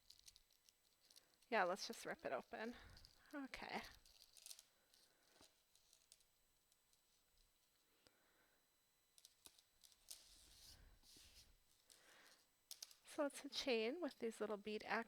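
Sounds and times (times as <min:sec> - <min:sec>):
chain necklace clicking: 0:02.8 - 0:04.7
light rustling of a bag: 0:09.5 - 0:13.1.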